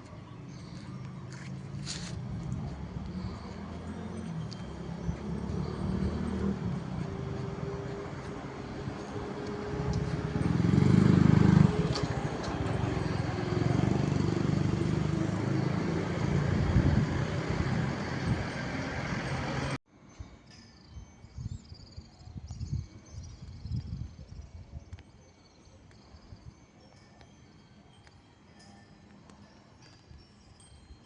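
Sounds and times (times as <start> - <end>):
street traffic noise: 0.0 - 19.8
vehicle running close by: 0.7 - 19.8.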